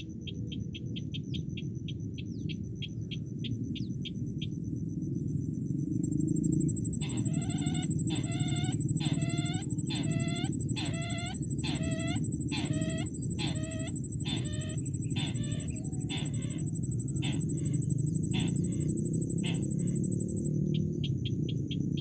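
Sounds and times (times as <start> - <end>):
thin high whine: 5.9 - 20.5
bird lure call harsh clucking: 7.0 - 20.5.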